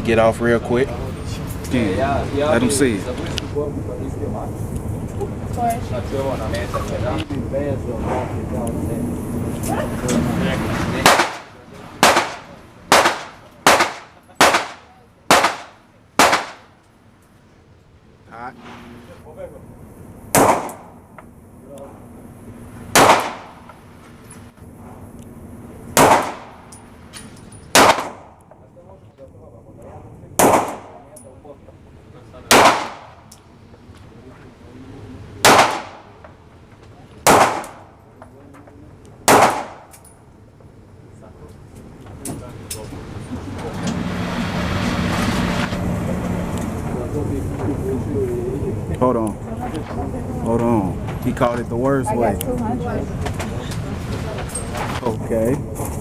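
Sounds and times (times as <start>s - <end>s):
gunshots with echo: 11.0s - 16.7s, 20.3s - 21.0s, 22.9s - 23.7s, 26.0s - 26.7s, 27.7s - 28.4s, 30.4s - 31.0s, 32.5s - 33.2s, 35.4s - 36.1s, 37.2s - 37.9s, 39.3s - 39.9s.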